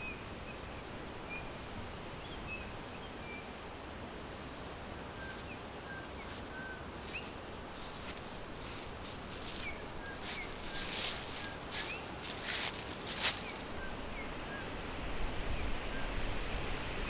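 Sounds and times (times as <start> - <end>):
background hiss: 0.0 - 14.2
rustling: 4.2 - 14.0
birds chirping: 5.1 - 14.0.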